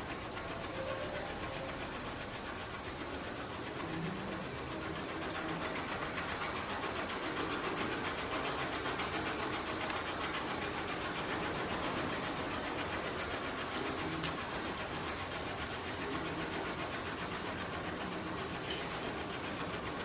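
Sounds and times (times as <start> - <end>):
faint low mechanical hum: 0.0 - 20.0.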